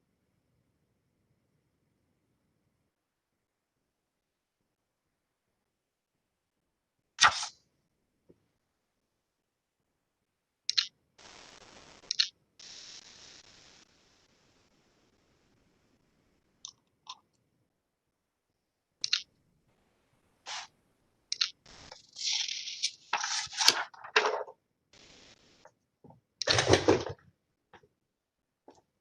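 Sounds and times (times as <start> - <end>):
clicks and crackles near microphone: 10.7 - 13.1, 19.0 - 19.3, 21.3 - 27.9.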